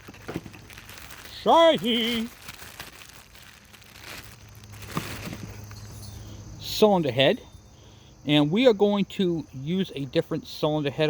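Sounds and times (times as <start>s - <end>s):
engine parts clicking and rustling: 0.0s - 3.2s, 3.8s - 6.5s.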